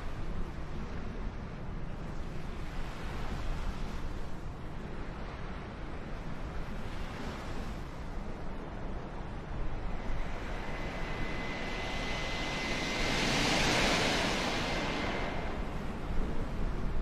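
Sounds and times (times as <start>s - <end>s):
thin steady whine: 7.9s - 17.0s
jet aircraft roar: 9.0s - 17.0s.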